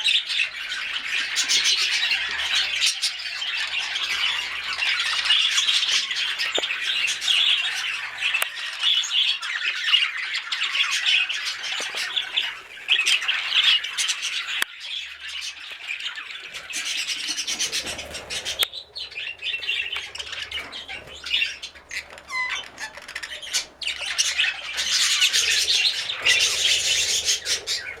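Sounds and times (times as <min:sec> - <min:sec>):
budgerigars chattering and squawking: 0:00.0 - 0:28.0.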